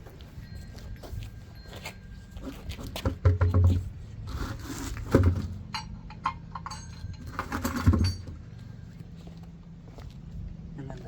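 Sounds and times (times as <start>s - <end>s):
metallic clinks of sockets: 5.7s - 7.4s.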